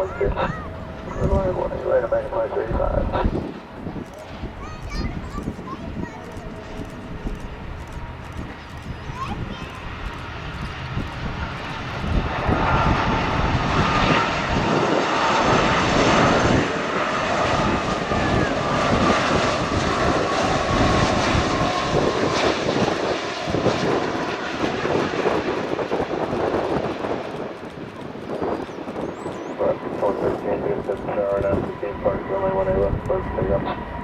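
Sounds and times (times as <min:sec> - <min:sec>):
jet engines rushing and whining: 0:00.0 - 0:34.0.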